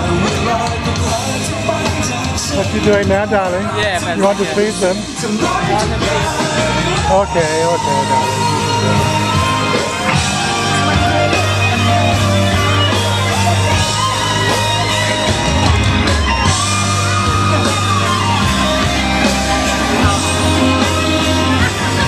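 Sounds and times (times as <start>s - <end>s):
rock music with singing: 0.0s - 22.0s.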